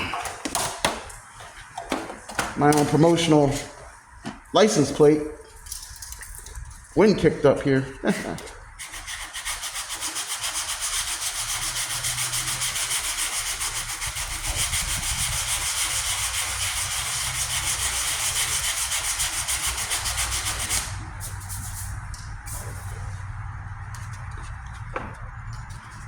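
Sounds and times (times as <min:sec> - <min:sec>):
sandpaper rubbing on metal: 0:08.8 - 0:23.2
wind rumbling on microphone: 0:14.0 - 0:16.0.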